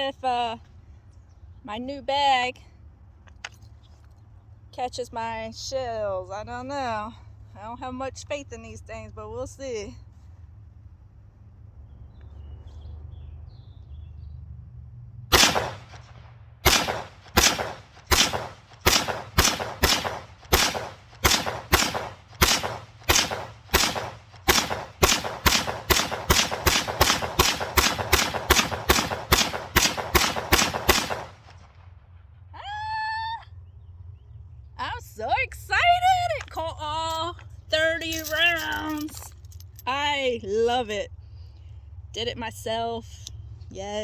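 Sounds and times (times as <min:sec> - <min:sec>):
rifle shots: 0:15.3 - 0:31.8.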